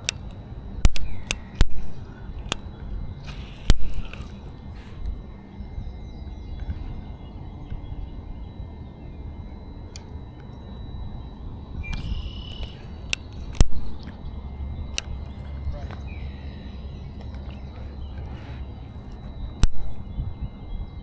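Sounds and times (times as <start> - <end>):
sharp clicks: 0.0 - 5.8, 9.4 - 20.0
low rumbling outdoor noise: 0.0 - 21.0.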